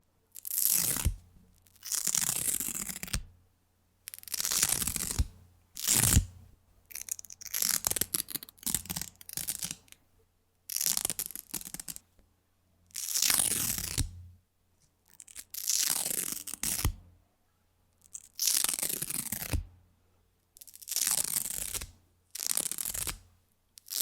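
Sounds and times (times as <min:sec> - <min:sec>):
velcro ripping apart: 0:00.4 - 0:03.2, 0:04.1 - 0:06.3, 0:06.9 - 0:09.9, 0:10.7 - 0:12.0, 0:13.0 - 0:14.1, 0:15.1 - 0:17.0, 0:18.1 - 0:19.6, 0:20.6 - 0:23.2, 0:23.8 - 0:24.0.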